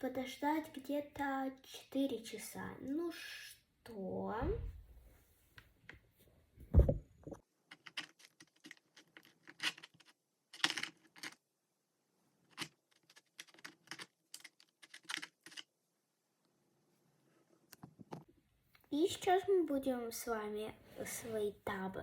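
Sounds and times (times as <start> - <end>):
thump on a table: 6.6 - 7.4.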